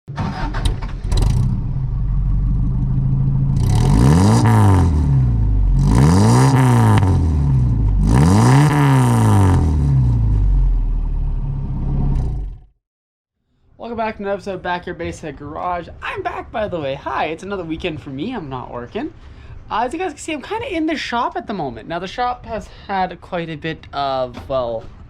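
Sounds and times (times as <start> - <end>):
engine idling and revving: 0.2 - 12.8.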